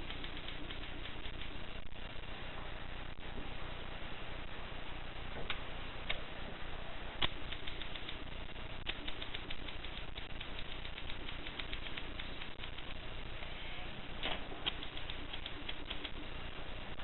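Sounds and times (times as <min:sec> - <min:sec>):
typewriter keystrokes: 0:00.0 - 0:01.6, 0:07.2 - 0:08.2, 0:08.9 - 0:13.0, 0:14.2 - 0:16.2
steady hiss: 0:00.0 - 0:17.0.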